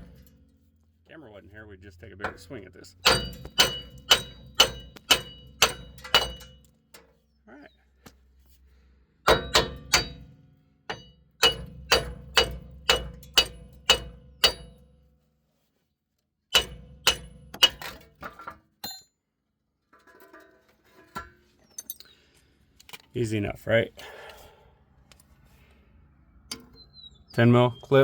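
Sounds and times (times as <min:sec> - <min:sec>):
hammer striking metal hub: 0:00.0 - 0:00.5, 0:02.2 - 0:07.1, 0:09.2 - 0:14.9, 0:16.5 - 0:19.1.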